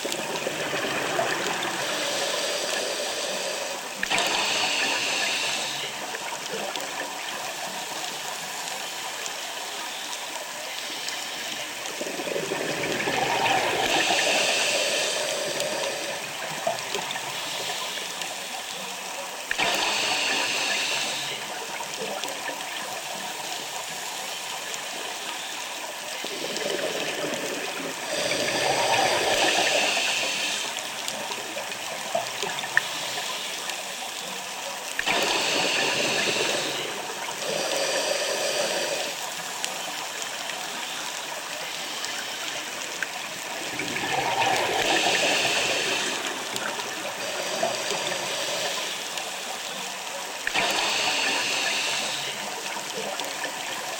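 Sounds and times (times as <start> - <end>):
exhaled bubbles burbling: 0.0 - 2.0, 11.8 - 14.6, 26.3 - 32.7, 43.1 - 48.1
steady water noise: 0.0 - 53.9
diver breathing through regulator: 0.8 - 6.0, 12.5 - 16.3, 26.3 - 31.0, 35.0 - 39.5, 43.6 - 49.9, 50.5 - 52.5.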